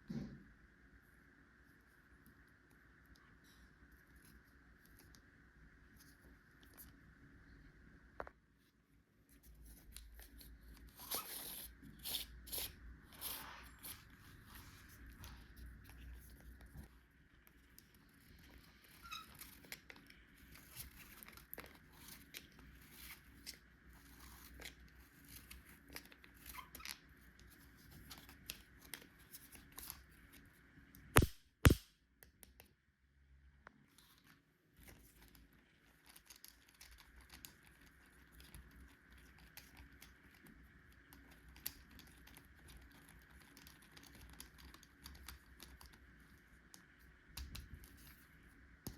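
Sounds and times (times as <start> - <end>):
small clicks and rustles: 1.6 - 7.1, 13.8 - 31.2, 33.6 - 48.9.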